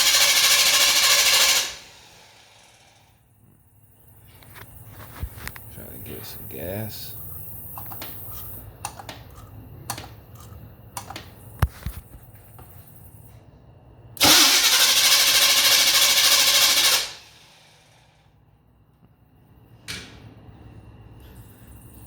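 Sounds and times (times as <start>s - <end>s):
engine starter cranking: 0.0s - 3.0s, 14.2s - 18.0s
clicks and knocks: 8.8s - 11.4s.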